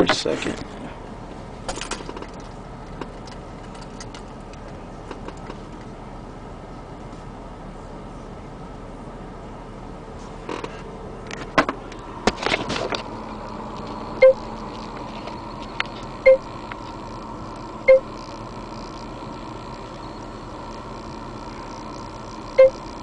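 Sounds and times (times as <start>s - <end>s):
faint electronic hum: 0.0s - 23.0s
short electronic beeps: 14.2s - 14.5s, 16.2s - 16.6s, 17.8s - 18.3s, 21.9s - 23.0s.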